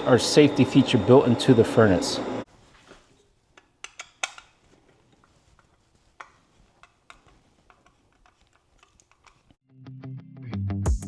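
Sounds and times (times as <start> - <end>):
clicks and taps of small parts: 3.6 - 4.5, 5.6 - 9.6.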